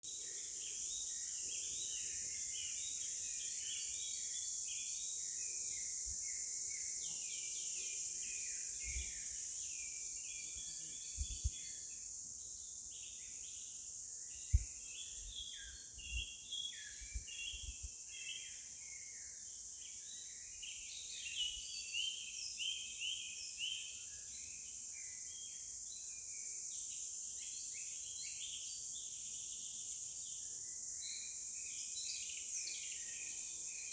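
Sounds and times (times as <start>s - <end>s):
small birds chirping: 0.0s - 25.5s.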